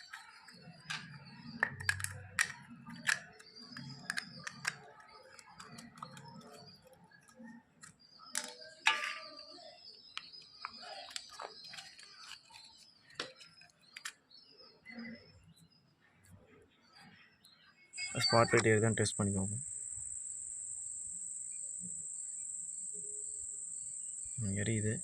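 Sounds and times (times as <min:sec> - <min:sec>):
small parts clicking and tapping: 0:00.0 - 0:09.2, 0:10.2 - 0:14.3.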